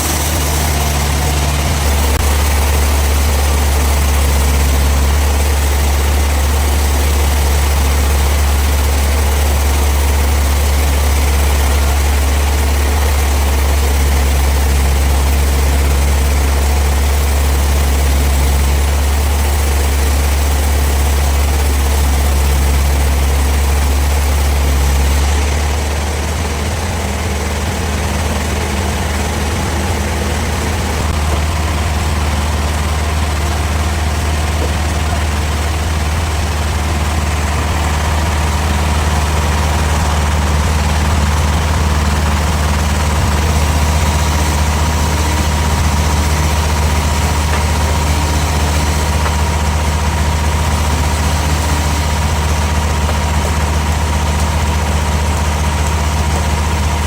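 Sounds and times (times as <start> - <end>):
sawmill machinery drone: 0.0 - 57.0
thin steady whine: 0.0 - 57.0.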